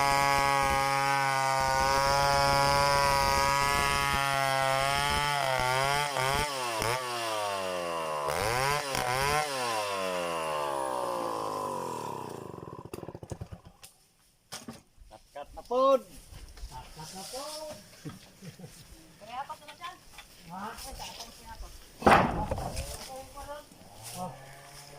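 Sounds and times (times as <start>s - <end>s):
chainsaw running: 0.0s - 13.8s.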